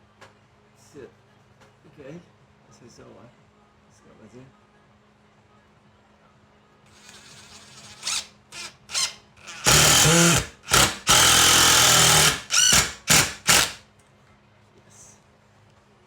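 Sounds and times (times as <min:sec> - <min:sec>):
power drill motor: 0:06.9 - 0:13.8.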